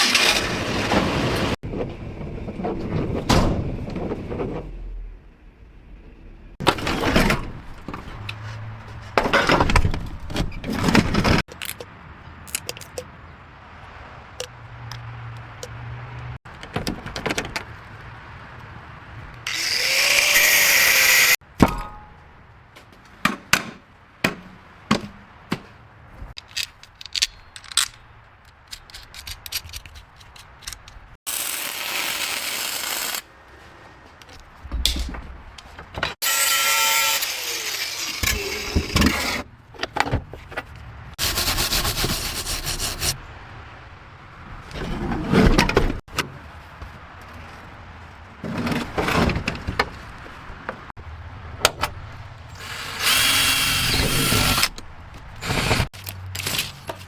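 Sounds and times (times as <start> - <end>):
power tool running: 19.5 - 21.4, 52.6 - 54.7.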